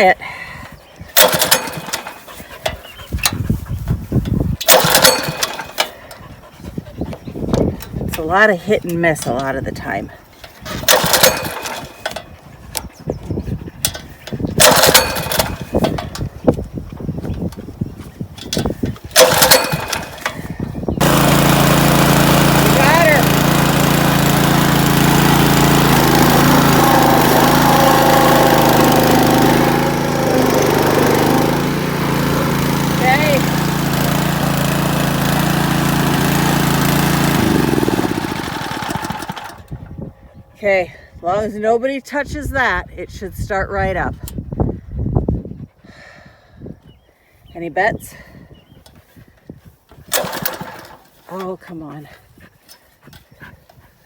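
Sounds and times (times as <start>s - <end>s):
small engine cranking: 1.1s - 3.5s, 4.3s - 6.4s, 10.4s - 12.4s, 13.8s - 16.3s, 18.4s - 40.0s, 49.9s - 51.6s
engine firing irregularly: 1.2s - 2.2s, 4.6s - 5.8s, 10.8s - 12.0s, 14.6s - 15.7s, 19.1s - 20.3s, 21.0s - 39.7s.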